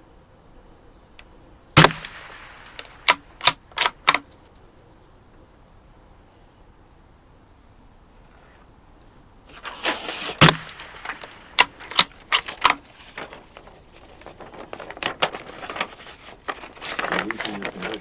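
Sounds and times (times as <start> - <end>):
sharp metallic clicks and rattles: 1.8 - 4.7, 9.5 - 18.0.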